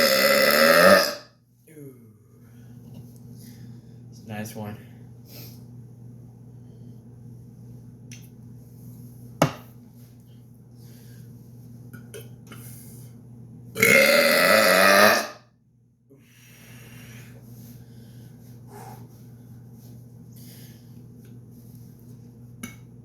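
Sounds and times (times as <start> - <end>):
man burping: 0.0 - 1.3, 13.8 - 15.4.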